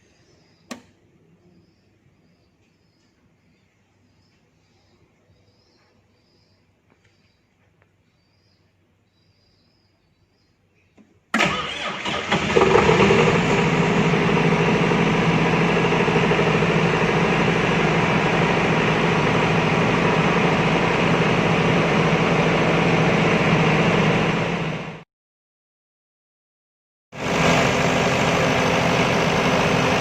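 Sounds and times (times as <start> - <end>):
diesel generator running: 11.3 - 25.0, 27.2 - 30.0
starter cranking engine: 11.4 - 17.3.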